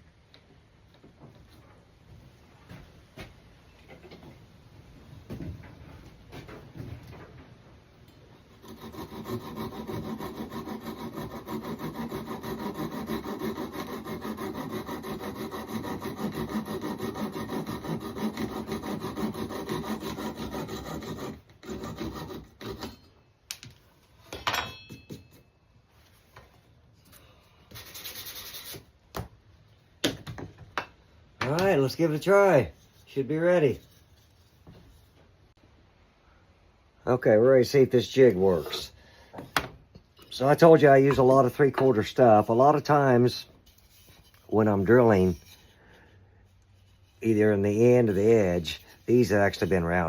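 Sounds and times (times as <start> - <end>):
rasping on wood: 8.5 - 23.0.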